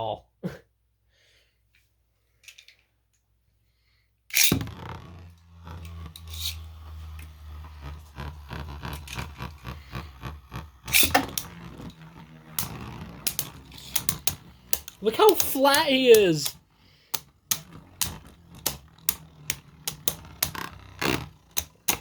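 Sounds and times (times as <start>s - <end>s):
spinning tops clacking together: 4.3s - 22.0s
spinning tops launching crack: 4.3s - 22.0s
spinning tops humming: 4.4s - 22.0s.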